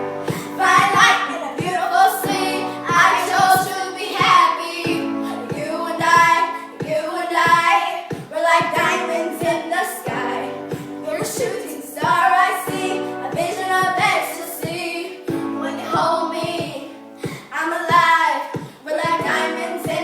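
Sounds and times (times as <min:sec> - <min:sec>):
held chord accompaniment: 0:00.0 - 0:07.2, 0:08.8 - 0:17.2
girls singing a pop song: 0:00.0 - 0:20.0.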